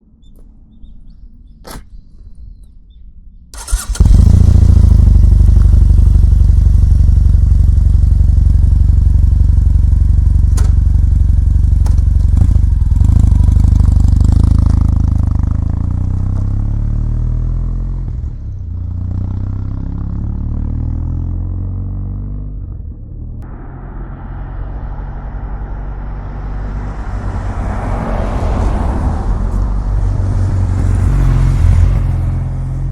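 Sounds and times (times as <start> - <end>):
motorcycle engine starting and idling: 3.6 - 16.8.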